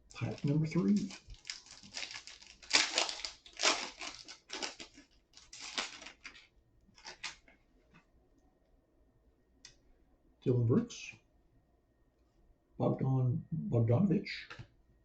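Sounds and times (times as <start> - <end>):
plastic wrapper tearing and crinkling: 0.1 - 7.5.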